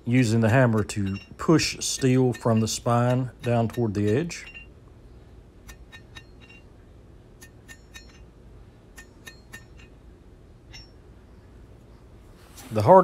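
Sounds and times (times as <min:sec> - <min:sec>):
hammer striking steel on anvil: 0:00.6 - 0:04.7, 0:05.7 - 0:06.7, 0:07.4 - 0:08.3, 0:08.9 - 0:09.9, 0:10.7 - 0:11.0.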